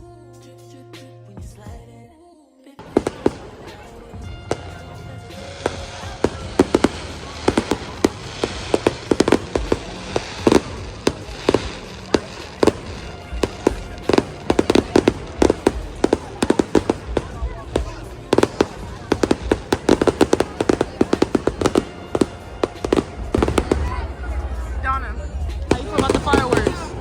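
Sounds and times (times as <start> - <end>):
fireworks bangs and crackles: 2.8 - 27.0.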